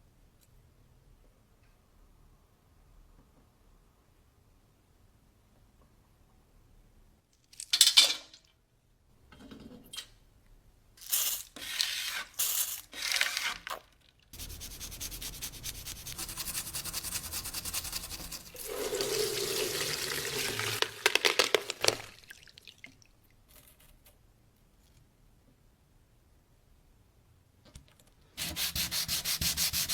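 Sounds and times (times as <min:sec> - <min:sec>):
brush scrubbing: 0:14.4 - 0:20.8, 0:28.4 - 0:29.9.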